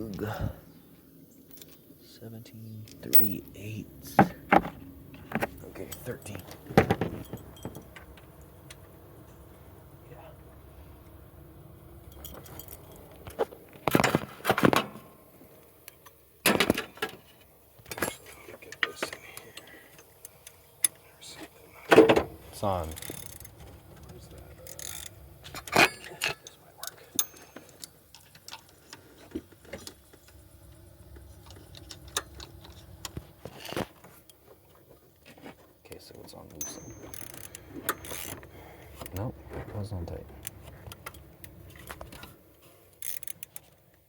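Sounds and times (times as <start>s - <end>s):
metal tools clinking: 2.8s - 3.8s, 5.2s - 8.2s, 12.0s - 14.8s, 17.8s - 20.1s, 22.8s - 29.0s, 36.5s - 38.5s
hand tools clicking on metal: 36.6s - 38.5s.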